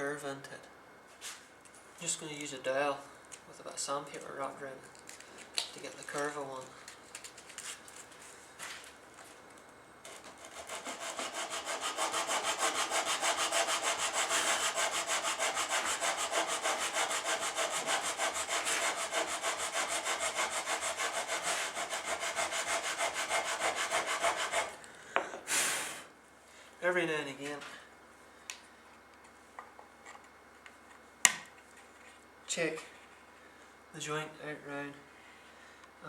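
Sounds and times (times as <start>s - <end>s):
sandpaper rubbing wood: 10.1s - 24.8s.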